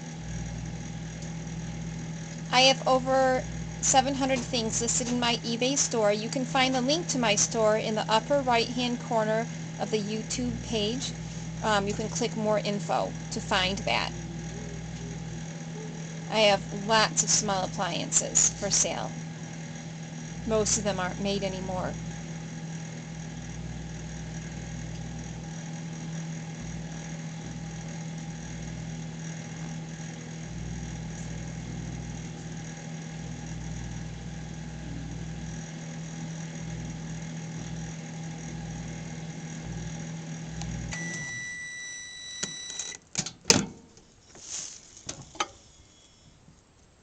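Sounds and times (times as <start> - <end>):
microwave oven humming: 0.0 - 47.0
long beep: 40.9 - 43.0.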